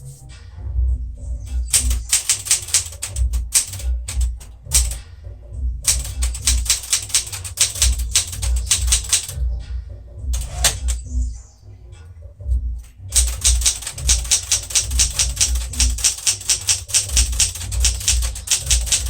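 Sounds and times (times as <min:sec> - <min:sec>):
manual typewriter clacking: 0:01.6 - 0:05.0, 0:05.9 - 0:09.4, 0:10.4 - 0:11.0, 0:12.8 - 0:19.0.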